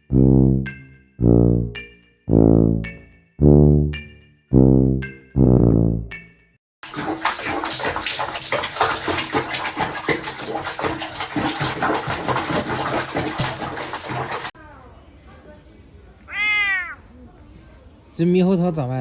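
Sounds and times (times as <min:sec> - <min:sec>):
low musical note: 0:00.0 - 0:06.2
water splashing and running: 0:06.8 - 0:14.6.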